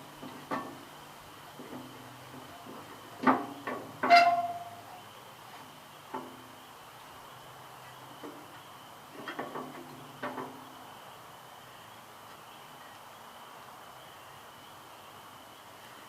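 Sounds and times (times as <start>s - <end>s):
short ringing knocks: 3.3s - 4.9s.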